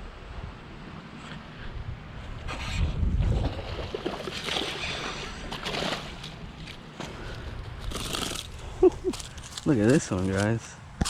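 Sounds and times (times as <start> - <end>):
outdoor rustling: 0.7 - 11.0
wind buffeting microphone: 1.6 - 5.6.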